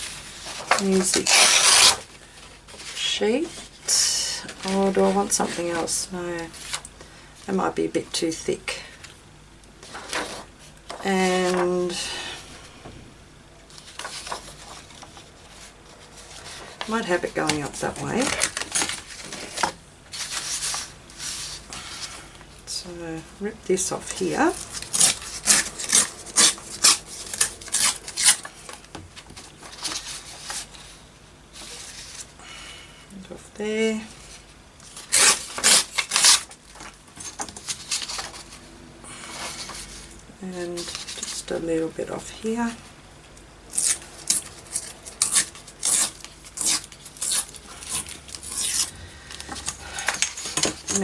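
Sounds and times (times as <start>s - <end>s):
paper tearing: 0.5s - 2.1s, 24.7s - 28.6s, 34.9s - 36.5s, 43.7s - 48.9s.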